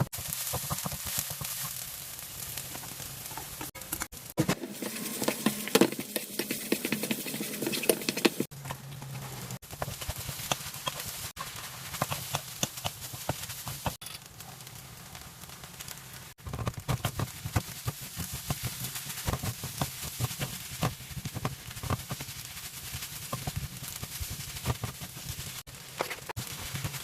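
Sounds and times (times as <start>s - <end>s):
rice sizzling in a frying pan: 0.0s - 8.5s, 9.4s - 27.0s
spatula tapping and scraping pan: 3.9s - 8.5s, 9.7s - 14.0s.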